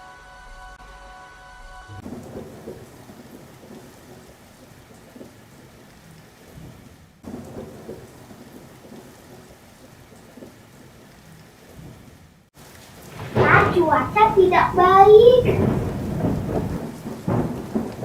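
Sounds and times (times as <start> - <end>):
thunder rumbles: 1.9 - 5.4, 6.5 - 10.8, 12.6 - 18.0
heavy rain: 2.0 - 18.0.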